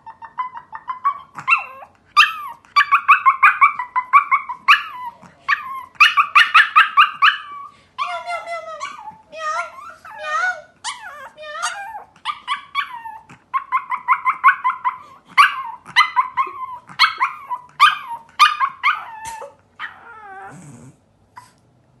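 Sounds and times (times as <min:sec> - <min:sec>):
puppy howling and yipping: 0:00.0 - 0:20.6.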